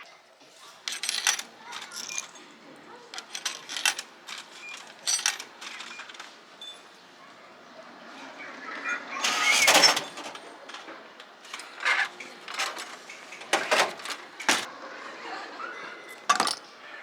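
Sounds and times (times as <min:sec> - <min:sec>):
sharp knocks and clatters: 0:09.2 - 0:14.7.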